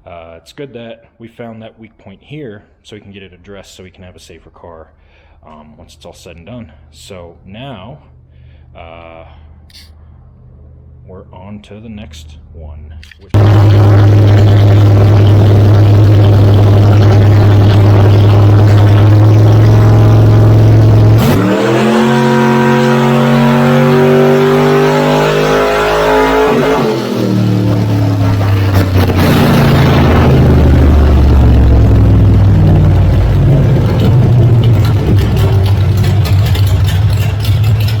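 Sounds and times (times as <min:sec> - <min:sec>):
car engine revving: 0:13.4 - 0:38.0.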